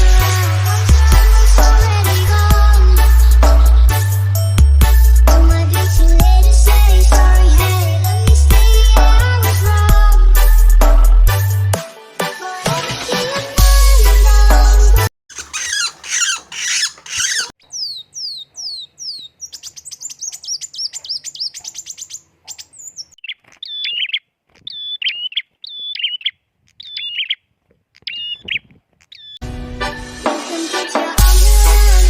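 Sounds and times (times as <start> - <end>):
songbirds calling: 15.3 - 29.4.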